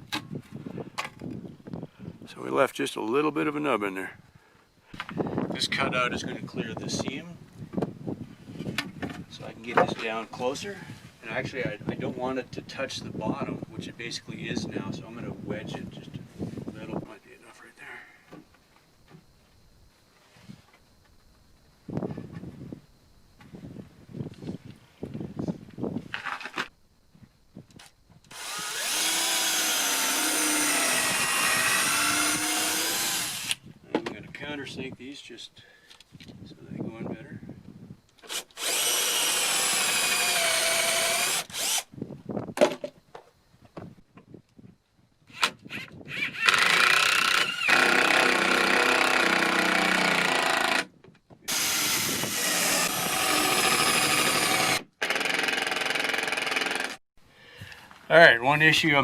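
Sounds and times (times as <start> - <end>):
power drill drilling into wood: 28.3 - 33.6, 38.3 - 41.9, 46.1 - 50.9, 51.5 - 57.0.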